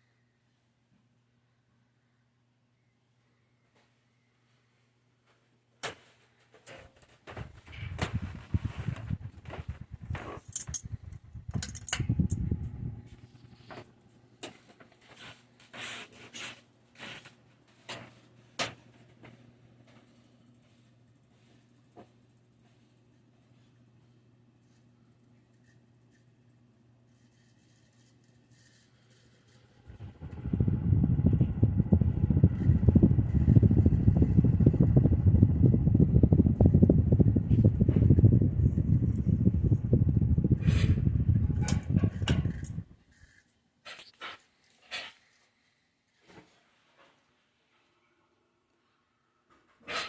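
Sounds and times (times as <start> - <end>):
ceiling fan running: 2.8 - 43.4
steady low hum: 7.2 - 14.4, 19.8 - 43.4
rubbing and scraping: 7.3 - 13.8
wind buffeting microphone: 7.4 - 13.2, 29.9 - 43.0.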